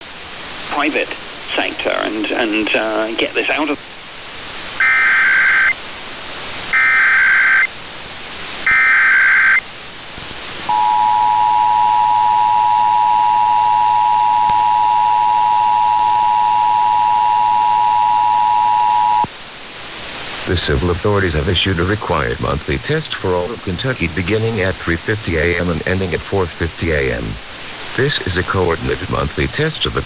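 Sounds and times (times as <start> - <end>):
screechy digital data tones: 4.8 - 5.8, 6.7 - 7.7, 8.7 - 9.6
two-tone attention signal: 10.7 - 19.3.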